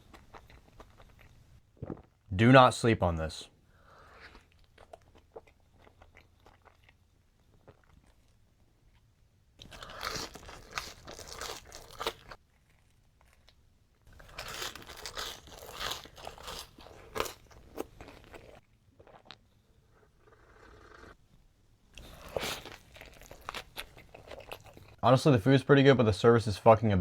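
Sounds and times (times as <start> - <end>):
person chewing crunchy food: 0.0 - 2.2, 3.9 - 19.6, 22.0 - 25.0.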